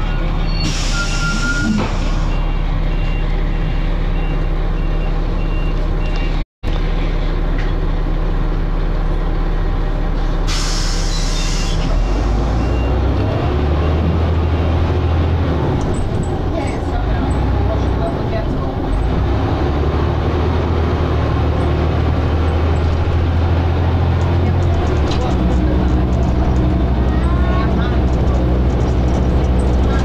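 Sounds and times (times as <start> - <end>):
bus diesel engine running: 0.0 - 30.0
air hiss burst: 10.5 - 11.8.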